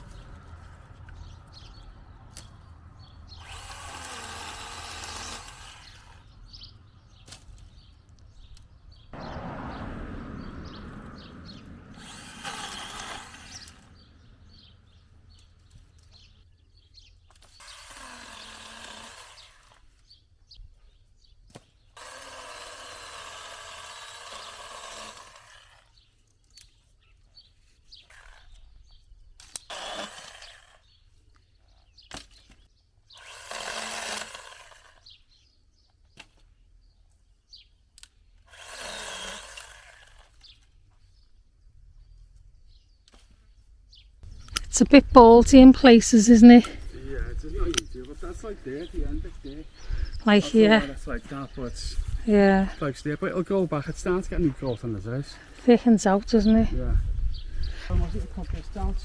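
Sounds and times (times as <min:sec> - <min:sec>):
hedge trimmer revving: 0:01.2 - 0:07.2, 0:10.4 - 0:15.9, 0:17.4 - 0:19.9, 0:22.0 - 0:26.0, 0:29.5 - 0:31.0, 0:33.1 - 0:35.2, 0:38.5 - 0:40.6, 0:49.8 - 0:52.8.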